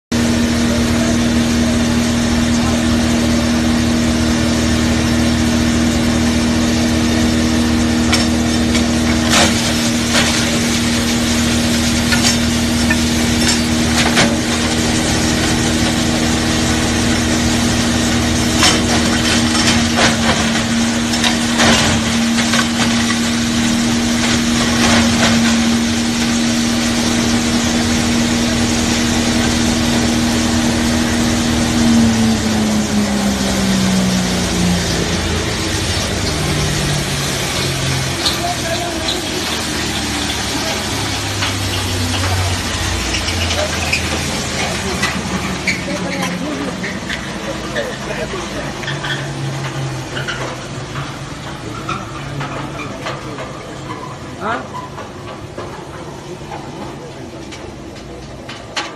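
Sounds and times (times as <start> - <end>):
wood grinder humming: 0.2 - 51.7.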